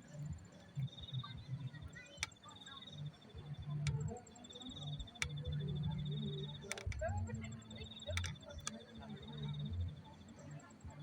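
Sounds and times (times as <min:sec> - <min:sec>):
sharp clicks: 0:06.2 - 0:07.2, 0:07.8 - 0:09.0.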